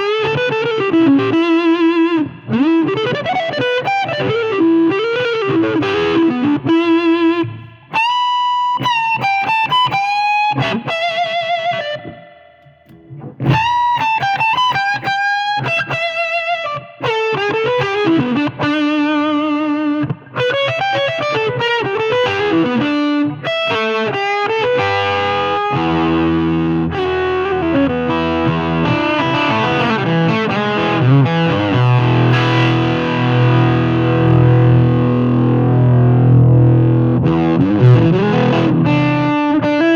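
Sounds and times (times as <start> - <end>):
fuzz electric guitar lead: 0.0 - 39.9
fuzzed guitar chords: 0.0 - 39.9.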